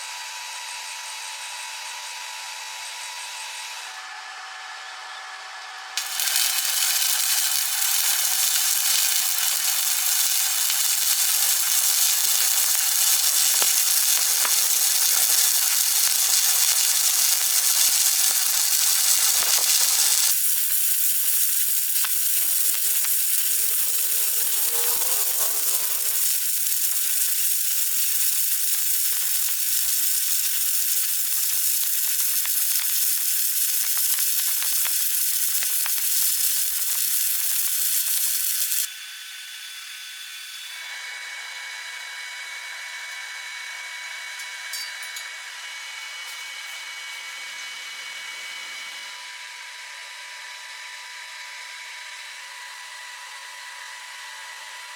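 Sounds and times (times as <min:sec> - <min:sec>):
steady whine: 0:06.0 - 0:39.0
arc welding hiss: 0:06.0 - 0:41.0.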